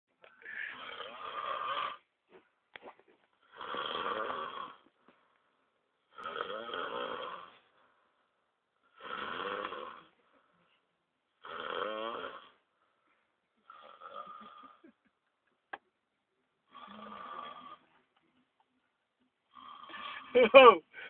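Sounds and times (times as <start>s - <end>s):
person snoring: 0.4s - 2.0s, 3.4s - 4.8s, 6.1s - 7.7s, 8.9s - 10.2s, 11.4s - 12.6s, 13.6s - 15.0s, 16.7s - 17.9s, 19.5s - 20.3s.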